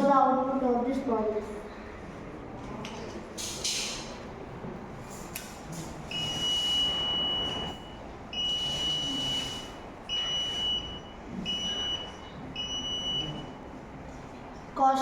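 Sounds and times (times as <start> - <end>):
high-pitched buzzer beeps: 6.1 - 13.6.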